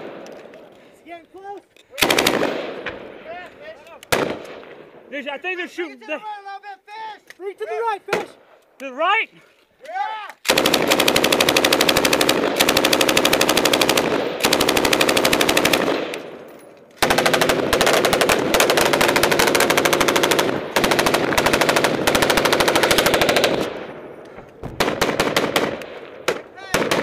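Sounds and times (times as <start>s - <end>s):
machine gun automatic fire: 2.0s - 2.8s, 10.4s - 16.2s, 17.0s - 23.8s, 24.8s - 27.0s.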